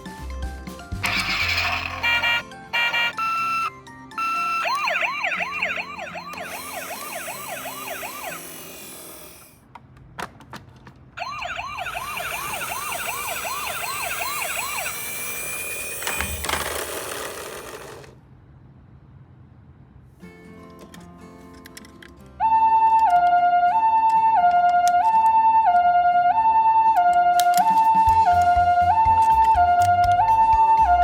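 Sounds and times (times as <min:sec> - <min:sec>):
toy electronic siren: 0:01.0 - 0:09.6, 0:11.2 - 0:18.1.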